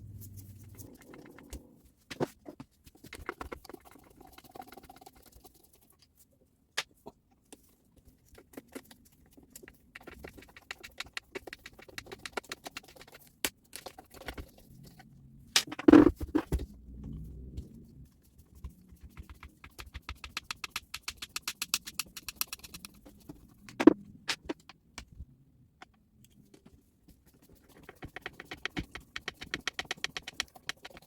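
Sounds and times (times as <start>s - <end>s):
tools clicking and tapping: 19.2s - 25.2s, 27.9s - 31.0s.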